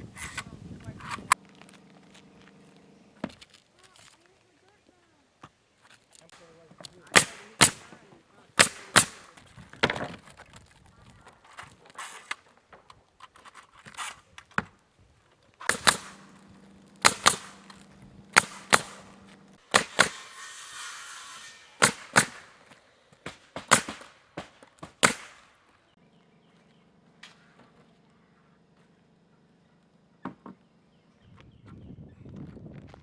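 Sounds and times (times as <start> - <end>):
hammering nails into wood: 7.1 - 8.0, 8.6 - 10.2, 15.6 - 16.3, 17.0 - 17.7, 18.3 - 19.1, 19.7 - 20.2, 21.8 - 25.4.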